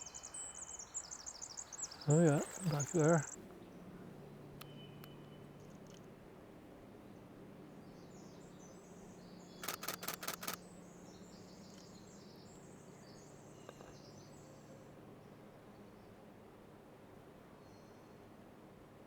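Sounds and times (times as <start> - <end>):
wren singing: 0.0 - 3.4
camera shutter clicks: 9.6 - 10.6.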